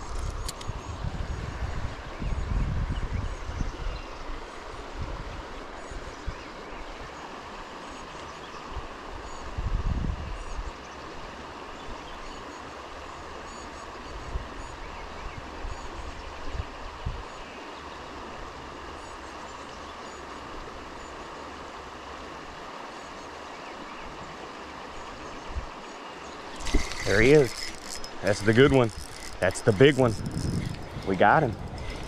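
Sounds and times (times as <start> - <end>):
river water running over rocks: 10.6 - 32.0.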